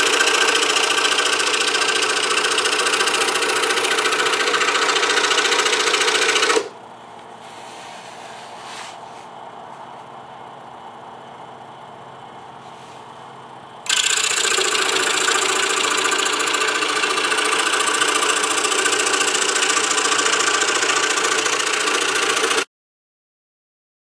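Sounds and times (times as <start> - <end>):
scroll saw running: 0.0 - 6.8, 13.9 - 22.7.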